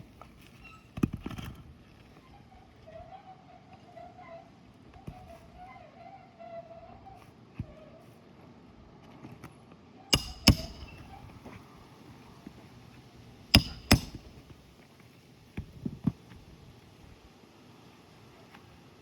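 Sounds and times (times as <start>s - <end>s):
hammer strikes: 10.2s - 11.1s, 13.6s - 14.4s
light hammer taps: 10.2s - 11.1s, 13.6s - 14.3s.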